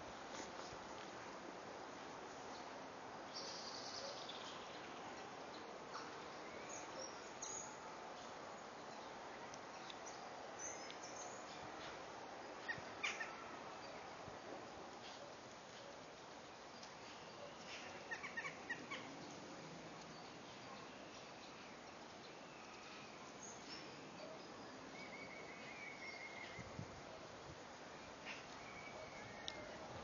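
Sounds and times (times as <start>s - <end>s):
outdoor background noise: 0.0s - 30.0s
bird calls: 12.6s - 14.0s, 16.8s - 19.4s, 20.1s - 26.8s.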